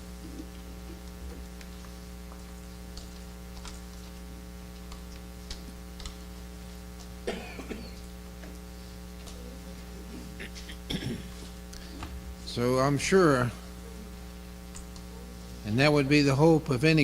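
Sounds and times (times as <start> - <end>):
electrical mains hum: 0.0 - 17.0
faint small ticks: 0.4 - 6.2.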